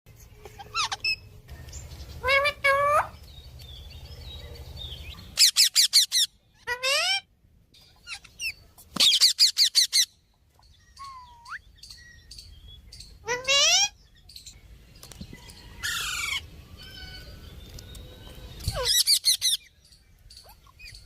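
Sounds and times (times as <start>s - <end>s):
parrot squawking: 0.4s - 1.3s, 2.2s - 3.2s, 5.4s - 7.3s, 8.0s - 10.1s, 13.2s - 14.0s
parrot chirping: 0.4s - 1.4s, 5.0s - 14.0s, 18.6s - 19.8s.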